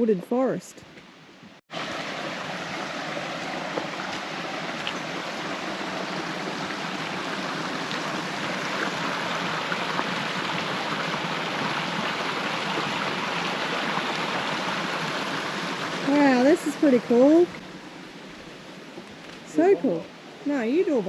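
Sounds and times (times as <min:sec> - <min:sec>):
creek water running over rocks: 0:01.7 - 0:21.0.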